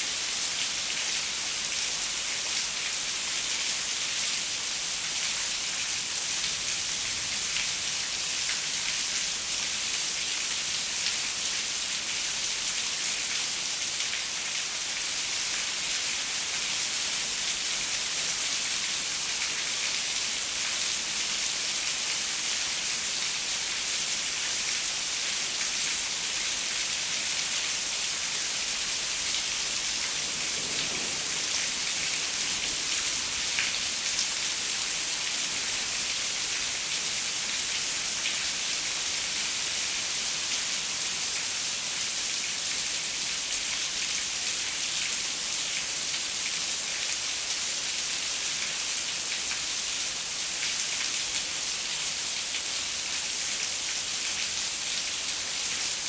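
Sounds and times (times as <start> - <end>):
rain pattering on a window: 28.0 - 36.8.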